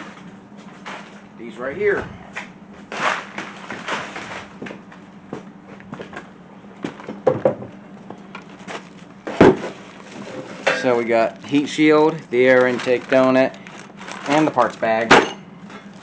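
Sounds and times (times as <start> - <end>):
parts rustling and clattering: 8.3 - 16.0.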